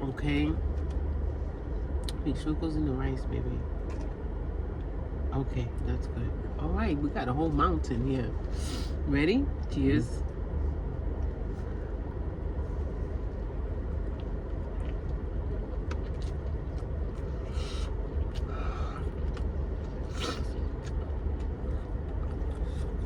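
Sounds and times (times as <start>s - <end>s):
low rumble: 0.0s - 23.0s
chewing crunchy taco shells: 11.0s - 23.0s.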